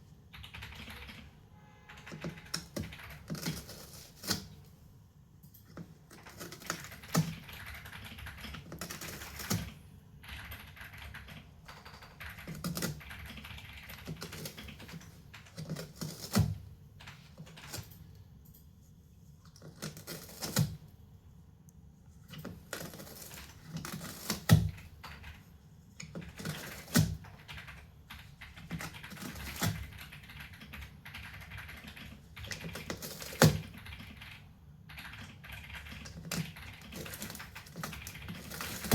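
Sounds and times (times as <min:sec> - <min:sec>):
cat scratching cardboard: 0:02.2 - 0:04.7, 0:05.7 - 0:07.5, 0:08.5 - 0:09.8, 0:12.4 - 0:18.2, 0:19.4 - 0:21.1, 0:22.0 - 0:25.2, 0:26.0 - 0:33.9, 0:36.0 - 0:38.9.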